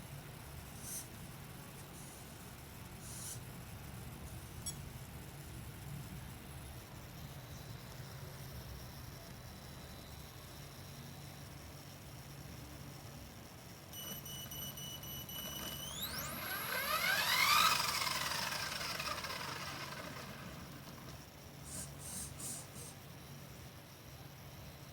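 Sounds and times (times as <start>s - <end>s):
rc helicopter motor whine: 14.0s - 23.0s.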